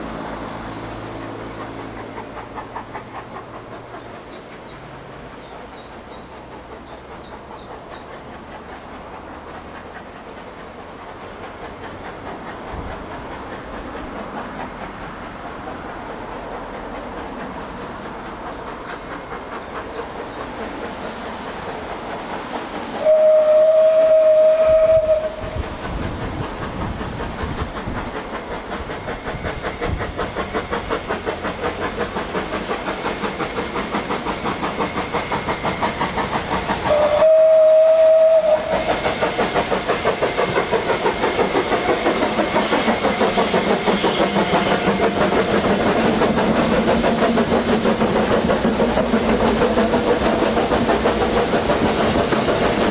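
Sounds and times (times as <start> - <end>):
rhythmic beat of running train: 0.0 - 52.9
steam locomotive whistle: 22.9 - 25.8, 36.7 - 39.8.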